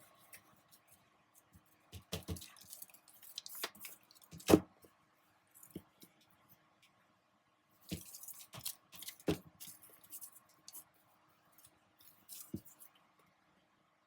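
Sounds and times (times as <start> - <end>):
paper crinkling and rustling: 1.9 - 4.6, 7.9 - 10.8.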